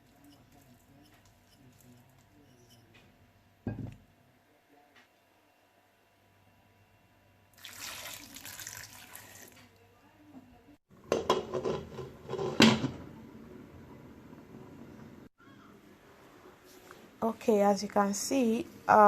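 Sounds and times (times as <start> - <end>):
dishes clattering: 3.7 - 4.0, 11.0 - 13.0
kitchen tap running: 7.6 - 9.6
water splashing in a sink: 7.6 - 9.7.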